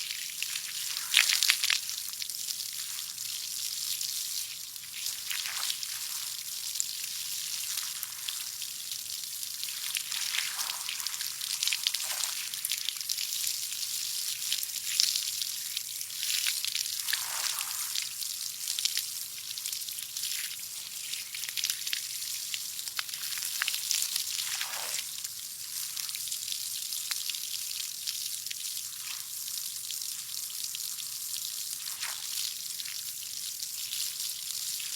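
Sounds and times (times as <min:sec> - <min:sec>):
water spraying with a hiss: 0:09.8 - 0:12.8, 0:17.0 - 0:18.1, 0:23.3 - 0:25.2.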